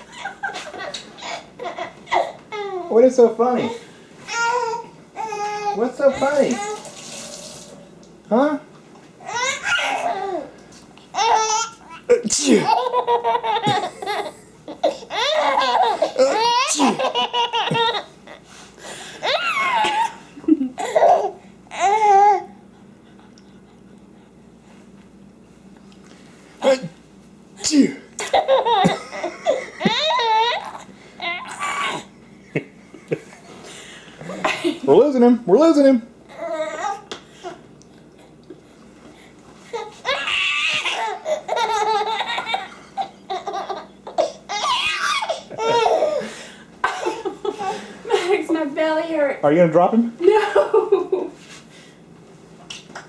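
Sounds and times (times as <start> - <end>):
baby laughing: 0.0 - 3.0, 9.2 - 10.5, 11.1 - 18.4, 19.2 - 22.4, 28.2 - 32.1, 39.7 - 48.3.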